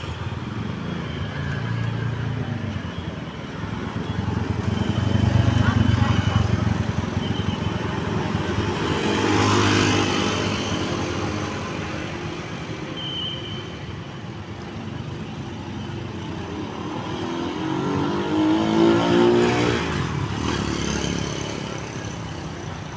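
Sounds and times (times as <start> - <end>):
passing vehicle: 0.0 - 12.9.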